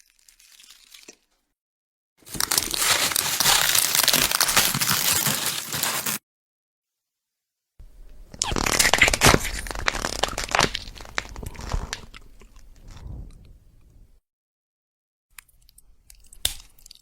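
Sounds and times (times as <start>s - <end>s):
bones crunching and cracking: 2.2s - 6.2s, 8.4s - 12.7s, 15.4s - 17.0s.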